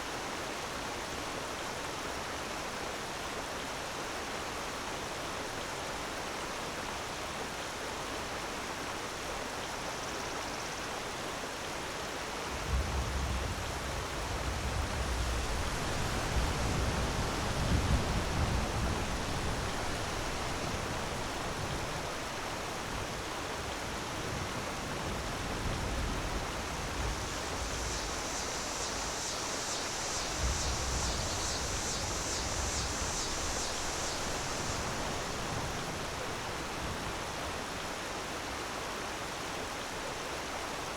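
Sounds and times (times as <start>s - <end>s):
waterfall rushing: 13.6s - 24.2s.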